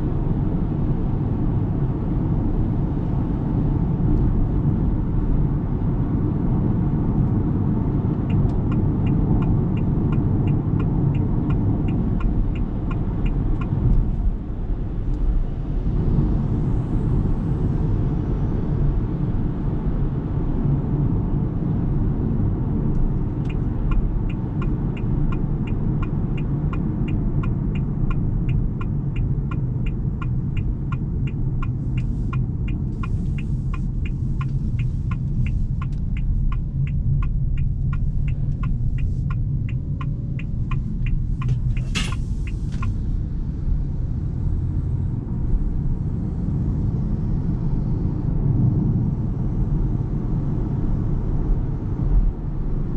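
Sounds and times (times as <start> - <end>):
turn signal ticking: 0.0 - 16.0, 22.2 - 46.8
road and tyre noise: 0.0 - 52.9.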